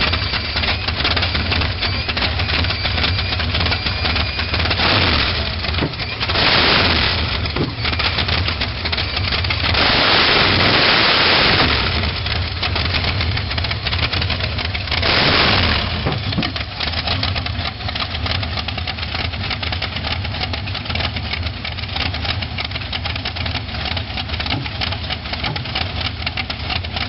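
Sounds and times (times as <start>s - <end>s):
hot rod engine idling: 0.0s - 27.0s
rush of noise: 4.6s - 8.6s, 9.5s - 16.7s.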